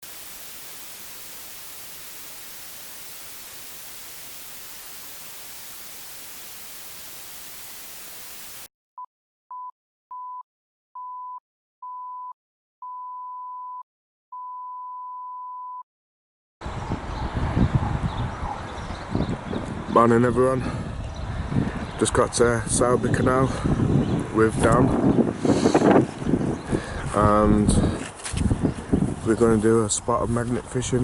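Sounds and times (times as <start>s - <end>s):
static hiss: 0.0s - 8.7s.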